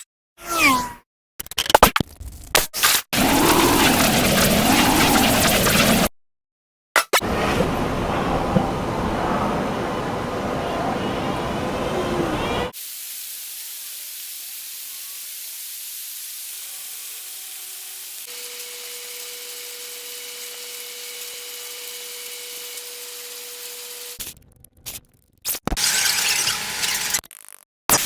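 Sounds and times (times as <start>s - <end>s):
high-pitched hiss: 12.8s - 18.2s.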